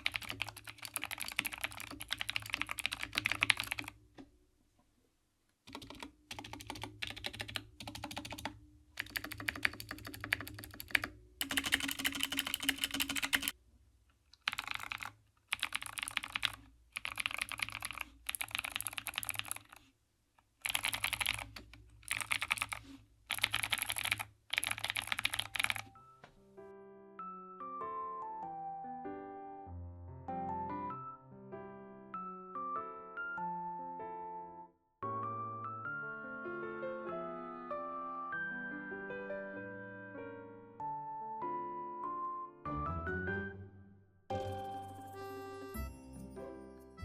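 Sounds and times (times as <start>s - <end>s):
mechanical keyboard typing: 0.0s - 4.0s, 5.7s - 13.6s, 14.4s - 19.8s, 20.6s - 26.0s
soft piano music: 25.3s - 47.0s.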